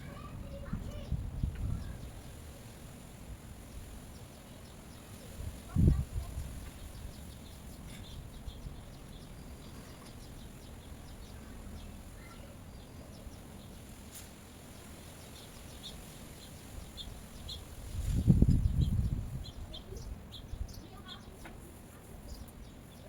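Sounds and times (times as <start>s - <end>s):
wind buffeting microphone: 0.0s - 2.5s, 5.2s - 9.3s, 16.5s - 21.1s
small birds chirping: 0.0s - 23.0s.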